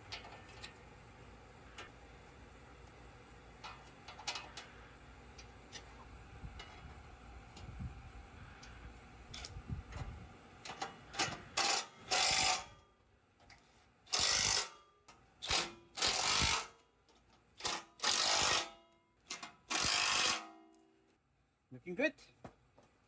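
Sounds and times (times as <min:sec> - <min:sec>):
ratchet wrench clicking: 0:11.2 - 0:12.7, 0:14.1 - 0:14.7, 0:15.4 - 0:16.7, 0:17.6 - 0:18.7, 0:19.3 - 0:20.5.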